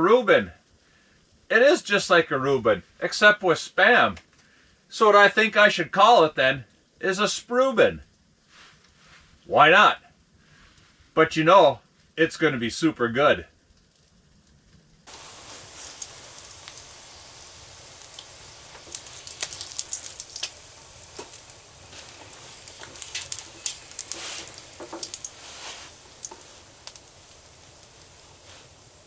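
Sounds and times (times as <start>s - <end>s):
meat sizzling in a frying pan: 15.1s - 29.0s.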